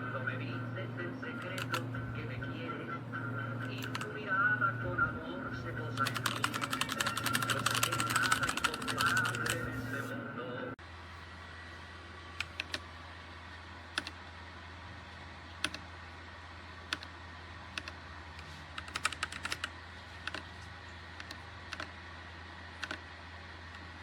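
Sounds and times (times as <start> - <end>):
low electrical hum: 0.0 - 24.0
mechanical keyboard clicks: 1.4 - 1.8, 3.7 - 4.1, 6.0 - 9.6, 12.4 - 12.8, 13.9 - 14.2, 15.6 - 15.8, 16.9 - 17.1, 17.7 - 18.0, 18.8 - 20.5, 21.2 - 21.9, 22.8 - 23.0.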